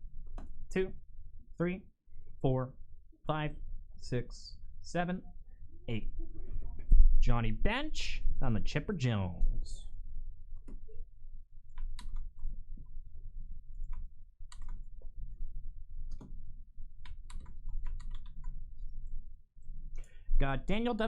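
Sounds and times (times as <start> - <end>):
low steady hum: 0.0 - 21.0
computer keyboard clicking: 11.7 - 12.5, 13.8 - 14.9, 16.1 - 16.3, 17.0 - 18.6.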